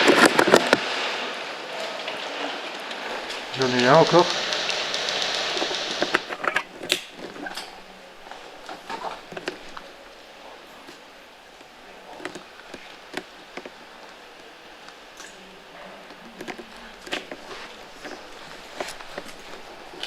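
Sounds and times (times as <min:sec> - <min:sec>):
sharp clicks and ticks: 0:03.3 - 0:07.7.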